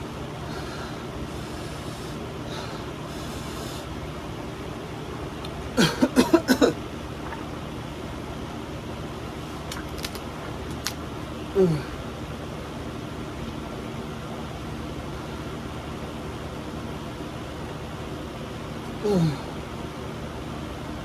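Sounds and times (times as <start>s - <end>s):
fan-like room hum: 0.0s - 21.0s.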